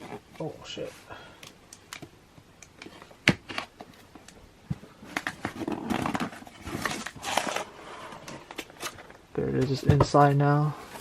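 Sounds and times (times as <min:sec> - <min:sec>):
packaging crinkling and rustling: 0:05.0 - 0:09.8.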